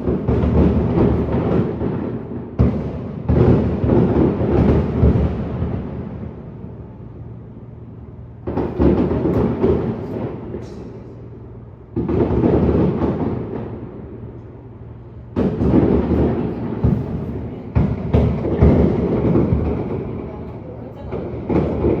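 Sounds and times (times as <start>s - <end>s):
fireworks booming: 0.0s - 22.0s
fireworks crackle: 8.4s - 11.2s, 11.9s - 14.3s, 15.4s - 20.6s.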